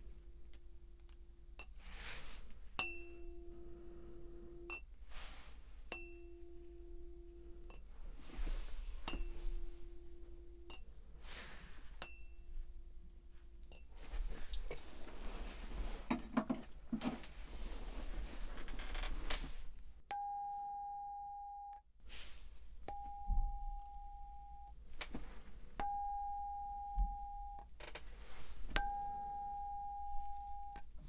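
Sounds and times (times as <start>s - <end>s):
tuning fork ringing: 2.8s - 4.9s, 5.9s - 7.9s, 9.0s - 10.9s, 12.0s - 12.6s, 20.1s - 21.9s, 22.8s - 24.8s, 25.8s - 27.7s, 28.8s - 31.0s
soft rustling whooshes: 8.1s - 9.8s, 14.0s - 16.1s, 17.2s - 19.8s, 28.1s - 28.8s.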